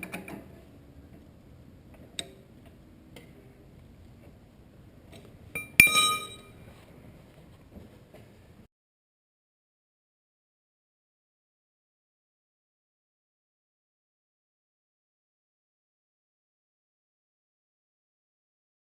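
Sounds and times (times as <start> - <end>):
metal tool striking metal: 5.6 - 6.6.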